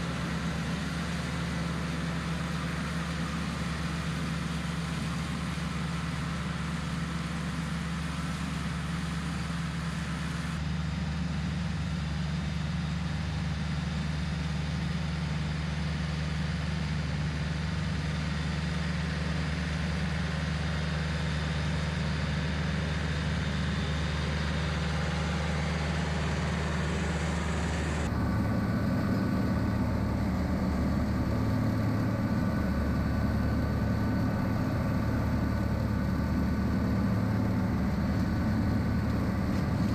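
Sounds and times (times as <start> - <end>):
tractor engine running: 0.0 - 39.9
belt-driven mower: 17.6 - 39.9.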